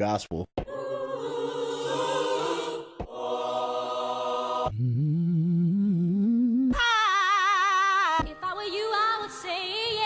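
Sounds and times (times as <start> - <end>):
choir-like chords: 0.6 - 4.8.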